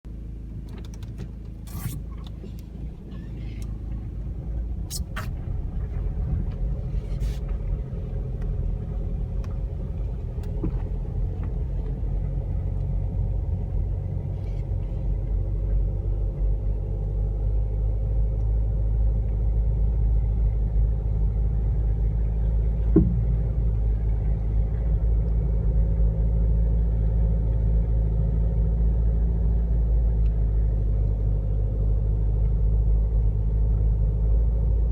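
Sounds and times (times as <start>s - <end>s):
car engine and road rumble: 0.0s - 34.9s
brief squeak: 1.7s - 3.7s, 4.9s - 5.4s.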